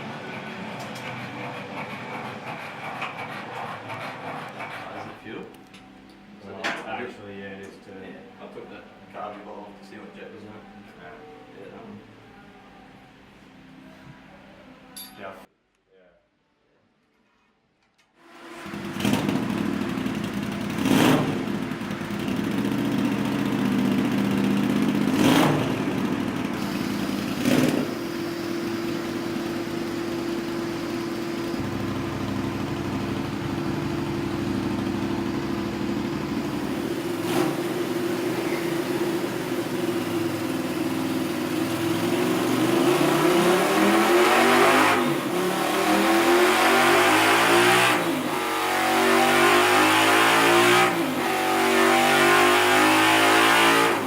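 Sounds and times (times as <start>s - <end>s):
motorcycle engine on dyno: 0.0s - 5.4s, 18.3s - 54.0s.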